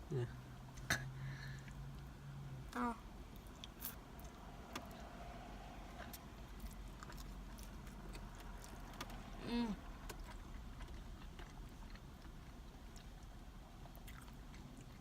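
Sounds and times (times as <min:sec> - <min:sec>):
person humming: 0:09.4 - 0:09.8.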